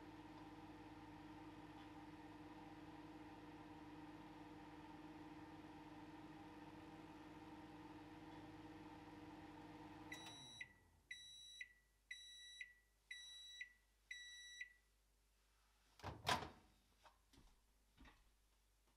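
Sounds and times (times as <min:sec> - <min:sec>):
microwave oven humming: 0:00.0 - 0:11.4.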